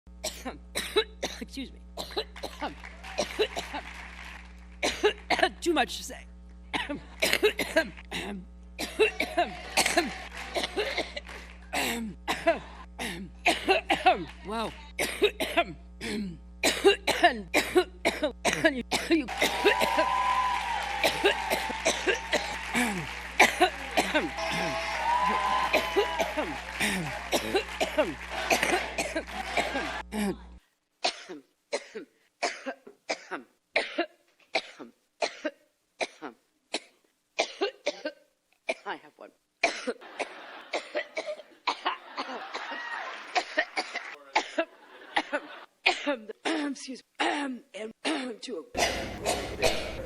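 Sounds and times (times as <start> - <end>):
electrical hum: 0.1 - 31.9
woman coughing: 0.2 - 3.8, 4.8 - 5.7, 6.7 - 20.0, 21.0 - 24.8, 25.7 - 30.4, 31.0 - 39.0, 39.6 - 50.0.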